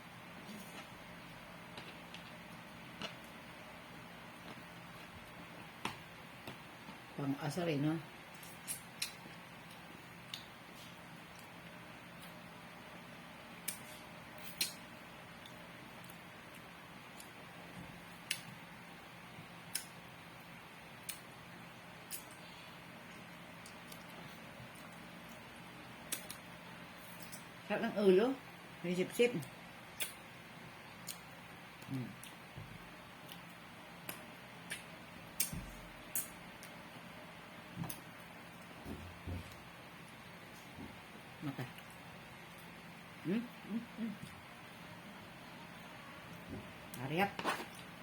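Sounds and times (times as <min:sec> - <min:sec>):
faint steady hum: 0:00.0 - 0:48.0
wet mouth clicks: 0:30.0 - 0:30.2.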